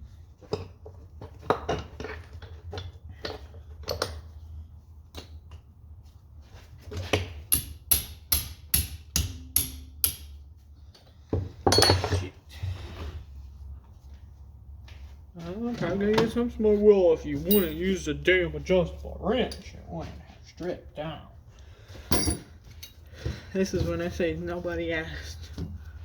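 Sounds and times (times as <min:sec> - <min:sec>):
metal tools tapping on steel: 0:07.5 - 0:10.4, 0:17.5 - 0:18.0, 0:19.4 - 0:19.7, 0:22.1 - 0:23.0.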